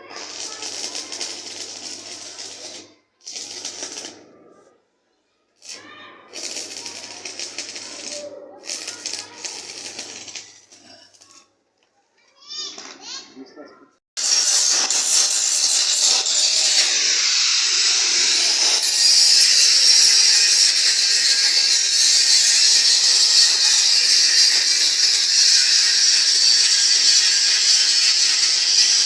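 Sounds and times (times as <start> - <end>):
loud steady hiss: 14.2 - 29.0.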